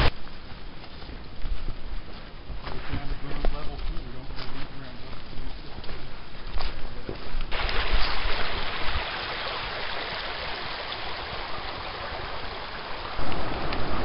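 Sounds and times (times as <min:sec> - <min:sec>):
rushing water: 0:07.5 - 0:14.0
wind buffeting microphone: 0:13.0 - 0:14.0.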